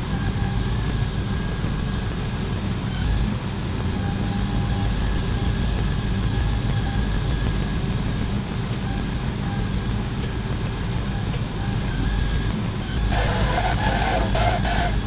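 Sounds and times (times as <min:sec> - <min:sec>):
faint high whine: 0:00.0 - 0:15.0
diesel engine rumbling: 0:13.1 - 0:15.0.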